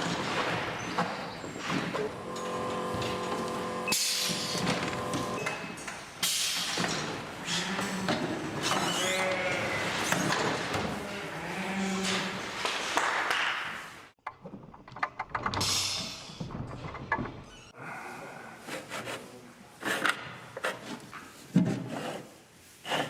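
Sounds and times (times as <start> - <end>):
clicks and knocks: 14.2 - 15.8.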